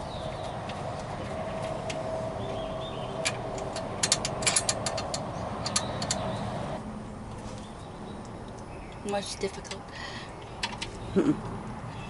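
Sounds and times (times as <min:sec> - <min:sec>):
socket ratchet clicking: 0:03.3 - 0:06.3.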